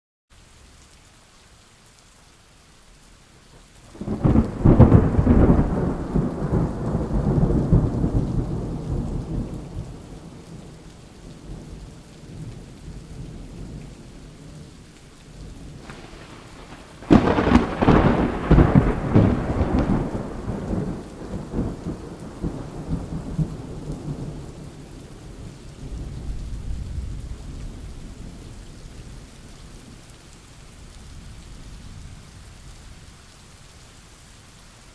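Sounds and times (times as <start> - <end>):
steady rain: 0.3 - 34.9
thunder peals: 4.0 - 10.4, 15.8 - 24.4.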